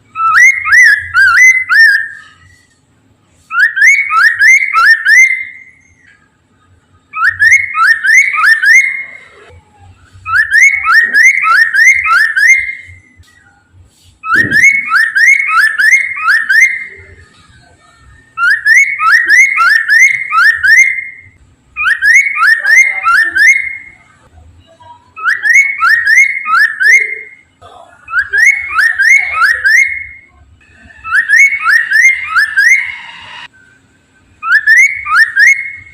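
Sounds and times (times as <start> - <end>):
bird singing upslurred whistles: 0.1 - 2.6, 3.5 - 6.2, 7.1 - 9.2, 10.2 - 13.6, 14.2 - 17.2, 18.4 - 24.0, 25.2 - 27.4, 28.1 - 30.3, 31.0 - 33.7, 34.4 - 35.9.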